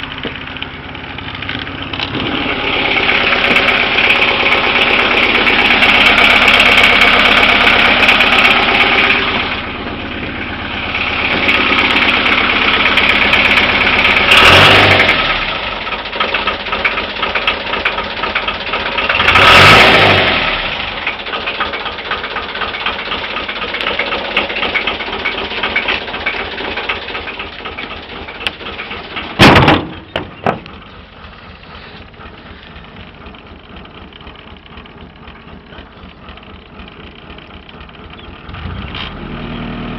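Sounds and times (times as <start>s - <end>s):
sharp knocks: 29.2s - 30.8s.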